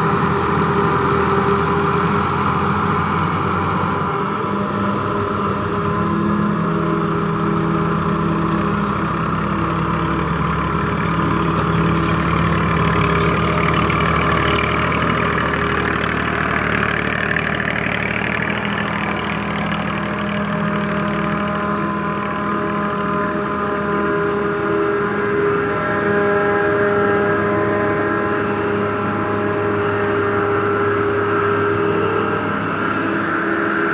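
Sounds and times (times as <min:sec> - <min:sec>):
diesel engine running under load: 0:00.0 - 0:33.9.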